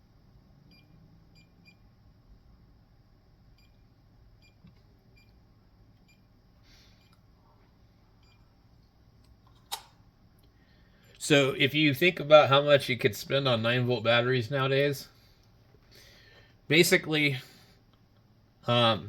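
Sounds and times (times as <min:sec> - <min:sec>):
sharp click: 0:09.2 - 0:10.0.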